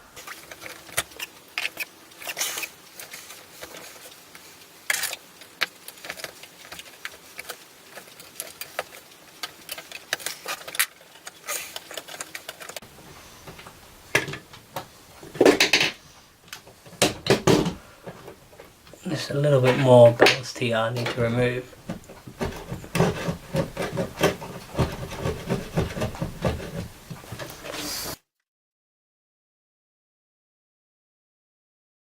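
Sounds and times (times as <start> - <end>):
clicks and scrapes on model track: 0.2 - 12.8, 22.1 - 28.2.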